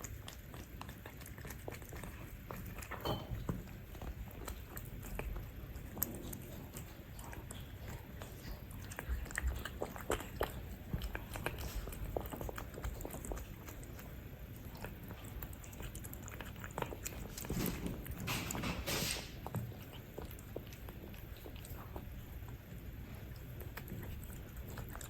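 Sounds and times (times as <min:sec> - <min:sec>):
cats chewing and crunching food: 0:00.0 - 0:25.0.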